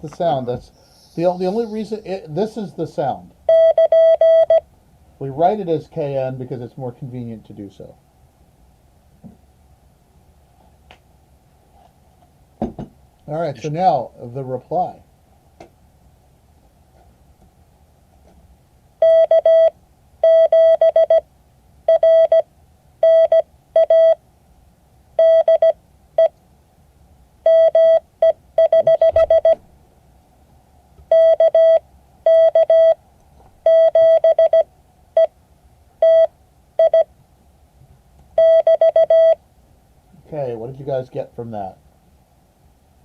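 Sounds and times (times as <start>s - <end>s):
morse code beeps: 3.5s - 4.6s, 19.0s - 21.2s, 21.9s - 22.4s, 23.0s - 24.2s, 25.2s - 26.3s, 27.5s - 29.6s, 31.1s - 33.0s, 33.7s - 35.3s, 36.0s - 37.1s, 38.4s - 39.4s.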